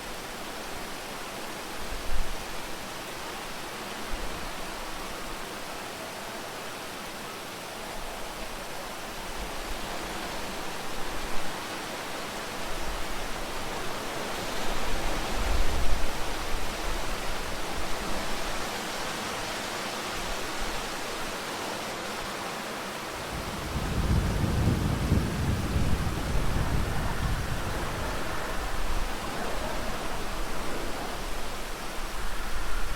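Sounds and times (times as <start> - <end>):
steady rain hiss: 0.0 - 32.9
low thunder rolling: 23.2 - 29.3.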